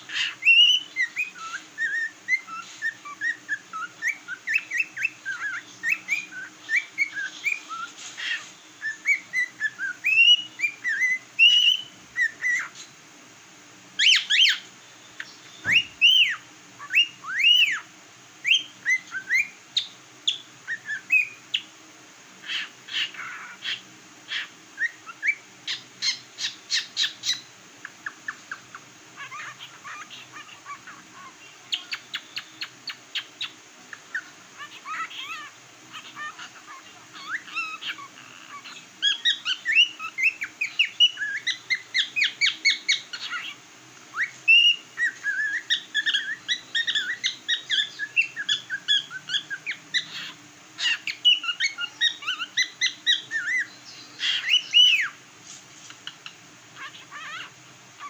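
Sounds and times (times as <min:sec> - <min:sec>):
cockatiel whistling: 0:00.1 - 0:12.8, 0:14.0 - 0:14.6, 0:15.2 - 0:17.8, 0:18.4 - 0:21.7, 0:22.5 - 0:27.4, 0:34.1 - 0:55.2, 0:56.8 - 0:57.5.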